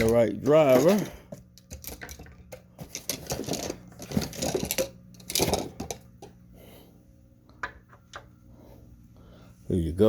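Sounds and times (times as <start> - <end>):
metal tools clinking: 0.0 - 6.0.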